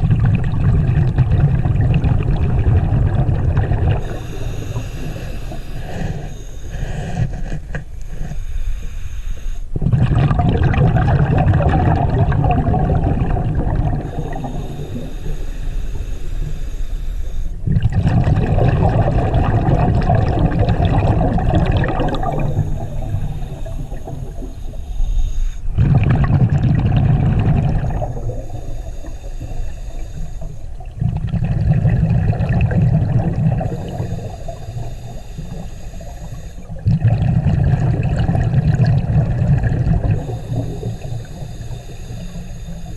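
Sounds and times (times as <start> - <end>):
exhaled bubbles rumbling: 0.0 - 6.3, 9.7 - 15.4, 17.5 - 42.9
hissing regulator inhalations: 4.0 - 9.8, 13.4 - 17.7, 20.3 - 26.0, 27.8 - 31.0, 33.3 - 36.9, 39.9 - 42.9.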